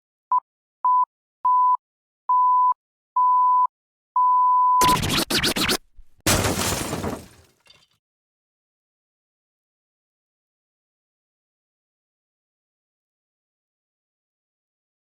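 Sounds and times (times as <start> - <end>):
electronic beeps: 4.8 - 5.5.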